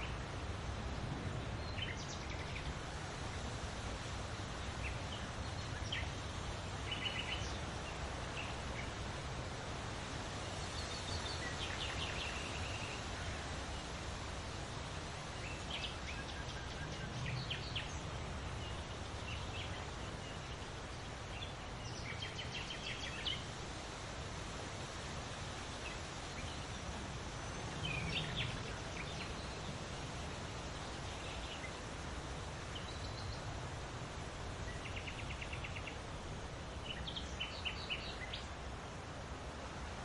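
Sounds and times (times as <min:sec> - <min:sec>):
birds chirping: 0:25.6 - 0:33.6.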